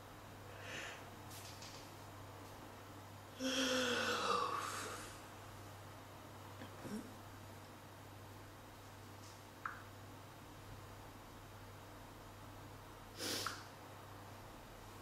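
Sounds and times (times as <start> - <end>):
faint breath: 0.5 - 1.1
girl yawning: 3.4 - 5.0.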